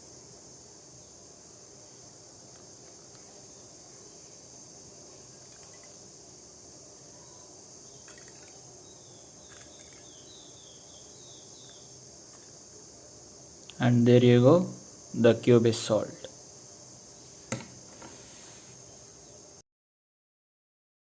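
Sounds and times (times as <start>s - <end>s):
high-pitched chirring hiss: 0.0s - 19.6s.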